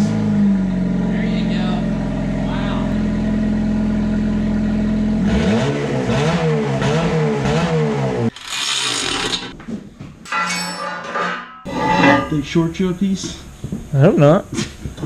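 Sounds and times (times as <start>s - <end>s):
car engine idling and revving: 0.0s - 8.3s.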